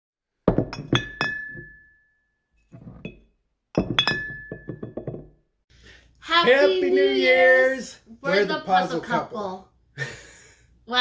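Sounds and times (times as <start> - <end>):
glass clinking: 0.5 - 5.4.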